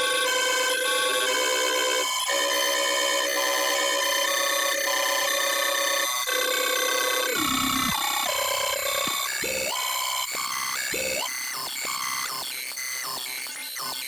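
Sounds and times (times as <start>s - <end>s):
synthesized computer processing tones: 7.2s - 9.3s
swooping electronic alert signals: 7.4s - 8.3s.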